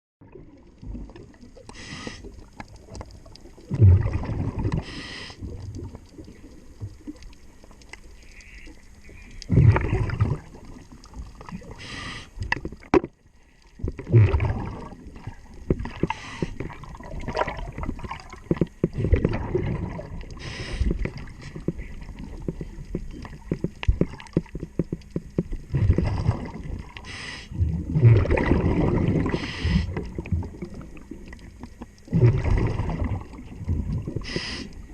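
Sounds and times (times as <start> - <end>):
diver breathing through regulator: 1.7 - 2.4, 4.8 - 5.5, 11.7 - 12.4, 16.0 - 16.8, 20.4 - 21.6, 27.0 - 27.6, 29.2 - 30.1, 34.2 - 34.9
exhaled bubbles bursting: 2.3 - 7.2, 9.4 - 11.8, 13.8 - 34.9
short hisses: 34.3 - 34.8.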